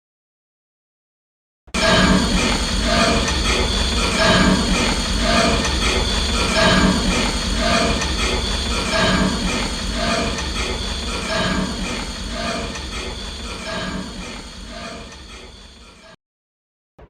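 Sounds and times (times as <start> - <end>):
rhythmic mechanical pulse: 1.7 - 16.2
steady low rumble: 1.8 - 15.8.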